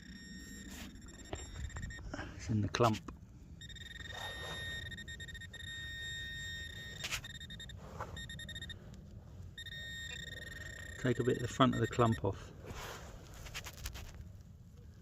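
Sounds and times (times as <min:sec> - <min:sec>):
metal detector high tone: 0:00.0 - 0:02.1, 0:03.6 - 0:08.8, 0:09.6 - 0:12.3.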